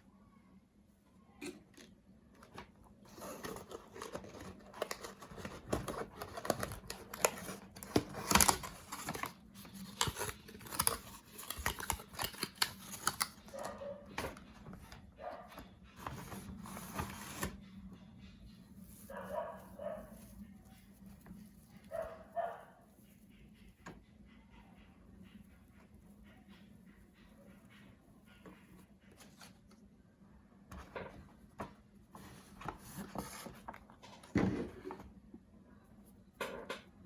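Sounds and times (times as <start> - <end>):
packaging being opened by hand: 2.5 - 15.0.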